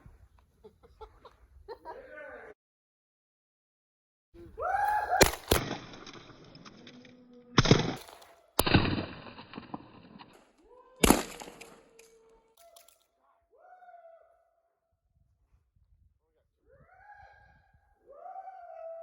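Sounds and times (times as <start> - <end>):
shotgun shots: 5.1 - 6.8, 7.6 - 10.4, 11.0 - 12.2.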